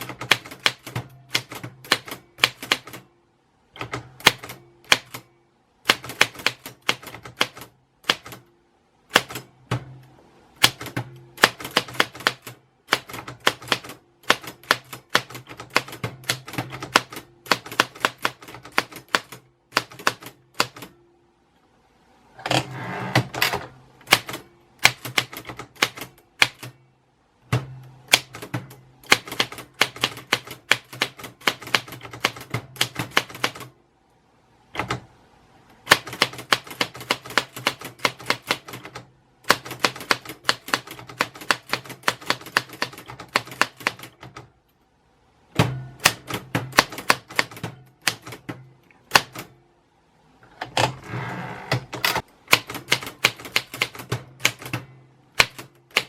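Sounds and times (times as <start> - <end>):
typewriter keys striking: 0.0 - 3.0, 3.8 - 5.2, 5.9 - 8.4, 10.6 - 20.9, 23.4 - 26.7, 28.1 - 33.7, 35.9 - 44.4, 45.6 - 49.5, 51.8 - 56.0.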